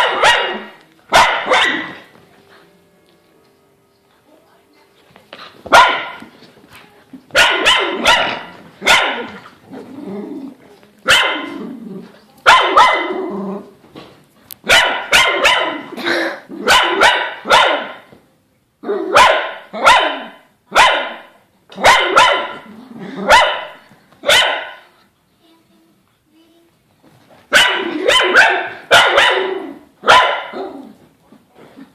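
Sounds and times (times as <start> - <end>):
dogs barking: 0.0 - 2.1, 5.7 - 6.3, 7.3 - 9.4, 11.1 - 11.7, 12.5 - 13.3, 14.7 - 18.1, 19.0 - 24.8, 27.5 - 30.9.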